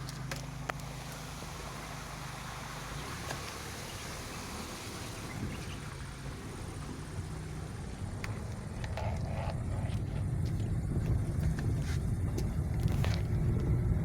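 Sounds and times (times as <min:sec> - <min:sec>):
rain hissing on wet road: 0:00.0 - 0:08.7
vehicle engine hum: 0:00.0 - 0:14.0.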